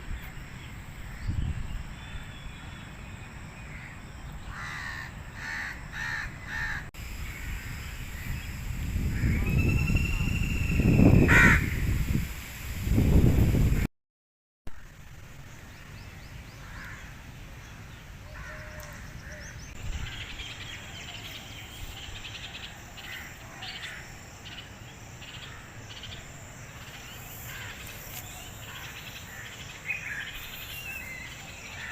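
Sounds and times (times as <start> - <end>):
birds chirping: 0.0 - 11.8, 19.3 - 31.9
high insect drone: 7.0 - 13.5, 20.0 - 31.9.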